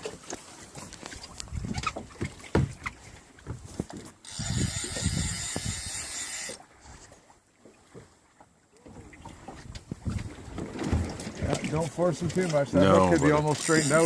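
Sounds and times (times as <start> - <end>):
reel drag buzzing: 4.2 - 6.8, 12.3 - 14.0
fishing reel ratcheting clicks: 4.3 - 6.6, 13.5 - 14.0.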